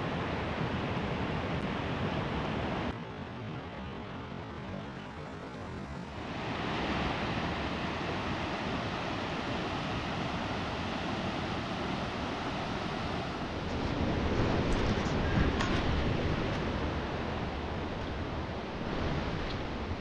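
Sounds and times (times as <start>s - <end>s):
waterfall rushing: 6.2s - 13.7s.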